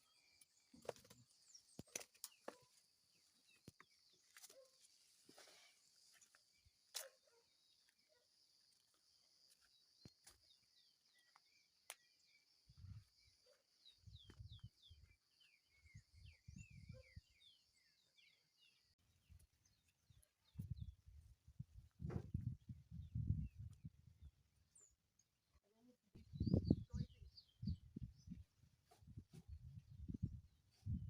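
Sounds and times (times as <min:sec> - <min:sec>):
bird chirping: 0:10.4 - 0:21.3, 0:22.4 - 0:29.0.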